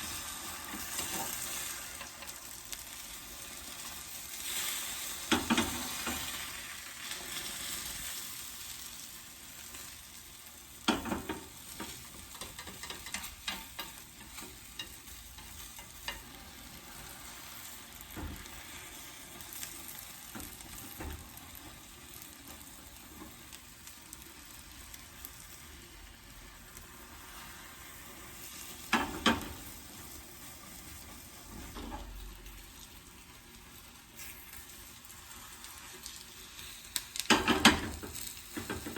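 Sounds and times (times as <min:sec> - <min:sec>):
food sizzling in a frying pan: 0:00.0 - 0:38.9
utensil clattering against pan: 0:10.9 - 0:16.3, 0:37.3 - 0:38.9.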